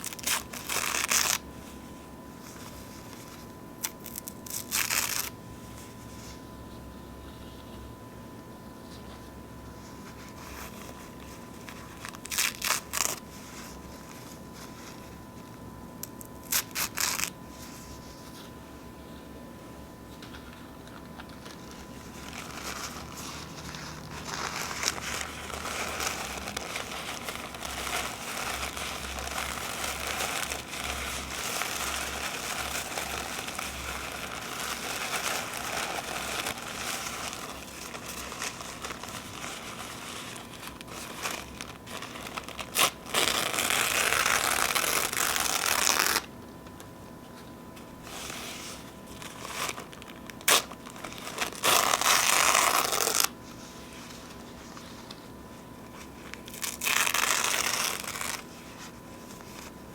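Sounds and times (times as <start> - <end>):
paper ripping: 0.0 - 1.4, 3.8 - 5.3, 10.2 - 15.0, 16.4 - 17.8, 20.2 - 46.3, 48.1 - 55.2, 56.0 - 59.8
paper napkins crinkling: 0.0 - 8.0, 8.7 - 19.4, 20.0 - 59.9.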